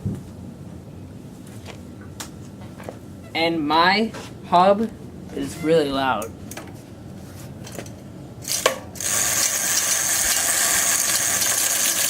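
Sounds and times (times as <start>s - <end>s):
bicycle freewheel ratchet buzzing: 8.4s - 12.0s.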